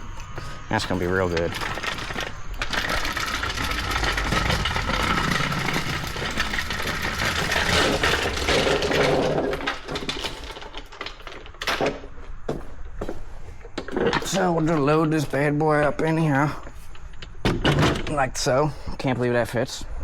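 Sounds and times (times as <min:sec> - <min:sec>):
irregular clatters: 0:00.1 - 0:12.2
reel lawnmower blades clicking: 0:00.3 - 0:11.9.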